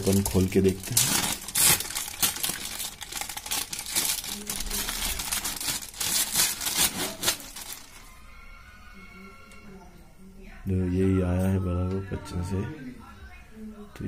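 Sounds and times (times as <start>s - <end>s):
plastic packaging crinkling: 0.0s - 8.2s.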